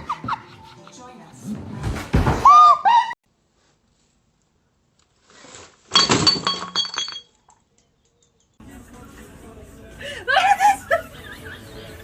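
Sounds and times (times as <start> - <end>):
crash with clinking pieces: 5.9 - 7.5.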